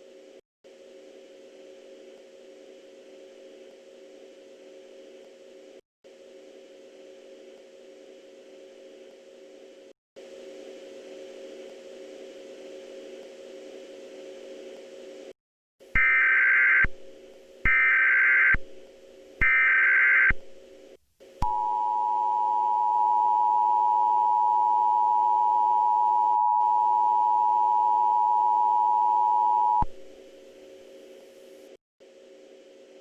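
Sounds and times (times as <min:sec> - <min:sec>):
steady low hum: 0:00.0 - 0:15.3, 0:29.8 - 0:33.0.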